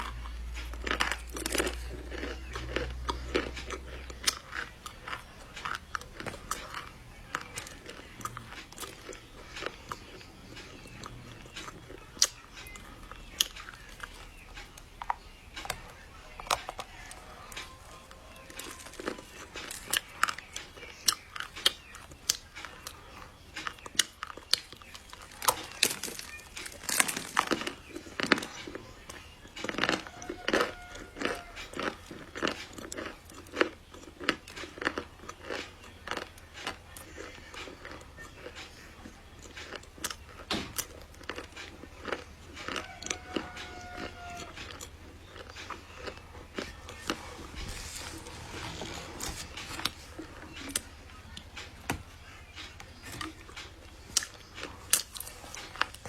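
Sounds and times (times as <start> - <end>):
chocolate crunching: 0.0 - 56.0
soft chewing: 0.0 - 56.0.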